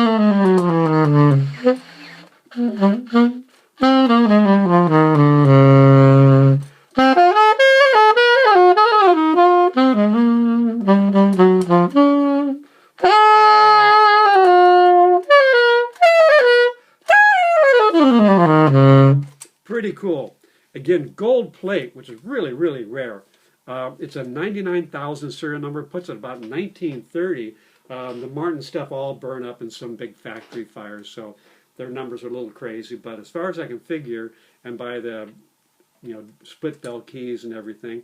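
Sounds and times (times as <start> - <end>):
solo alto saxophone: 0.0 - 19.4.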